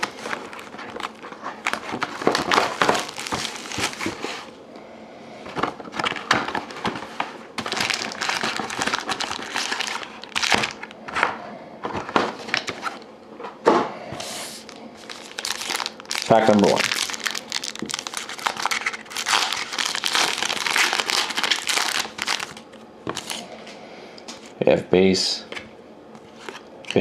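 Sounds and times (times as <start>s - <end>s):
plastic wrapping crinkling: 0.0s - 4.5s, 5.8s - 11.0s, 14.6s - 23.5s.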